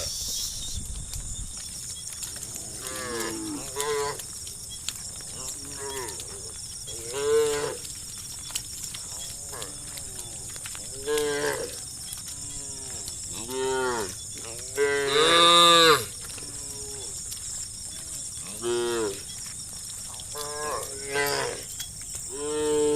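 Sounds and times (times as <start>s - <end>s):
cows mooing: 2.4s - 4.4s, 5.2s - 8.0s, 8.9s - 17.4s, 18.0s - 19.4s, 20.2s - 21.7s, 22.3s - 22.9s.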